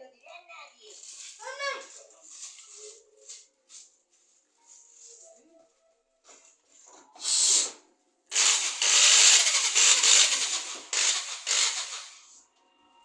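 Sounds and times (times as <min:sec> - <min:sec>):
power drill boring: 0:08.3 - 0:12.3.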